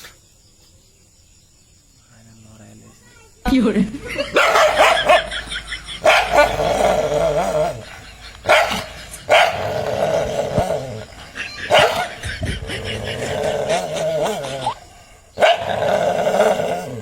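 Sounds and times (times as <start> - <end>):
dog barking and growling: 4.0 - 17.0.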